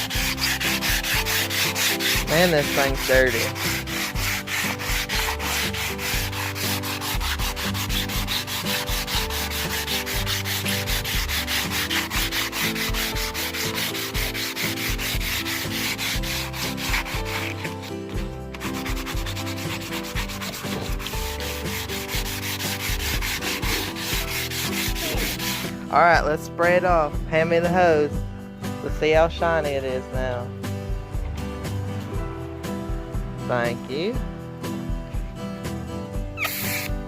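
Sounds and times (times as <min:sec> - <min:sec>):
scrubbing on machete blade: 0:00.0 - 0:25.8, 0:36.4 - 0:37.0.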